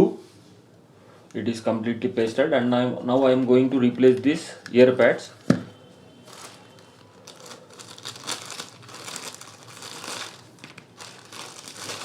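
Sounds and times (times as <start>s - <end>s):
crinkling and rustling of earpads: 6.3s - 12.0s.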